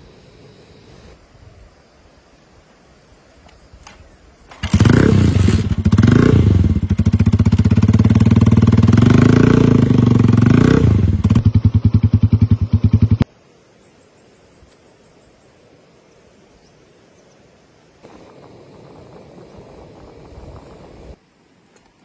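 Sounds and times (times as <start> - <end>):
faint clicks: 3.4 - 4.6, 21.7 - 22.0
motorcycle engine starting and revving: 4.5 - 13.3.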